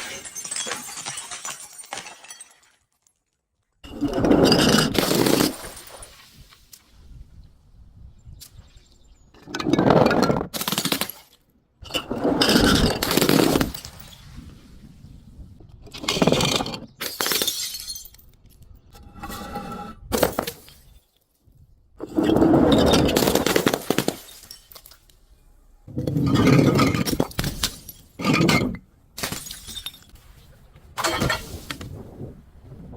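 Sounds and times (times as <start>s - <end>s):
glass bottles being crushed: 0.0s - 6.4s, 9.4s - 14.2s, 15.9s - 18.7s, 22.2s - 25.2s, 26.0s - 30.2s, 31.0s - 31.8s.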